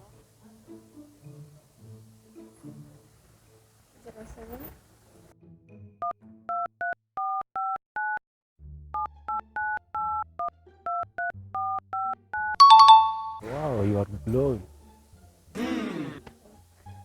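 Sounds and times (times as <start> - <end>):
phone keypad dialing beeps: 6.5 - 8.2, 9.0 - 13.4
bright chime: 12.6 - 13.4.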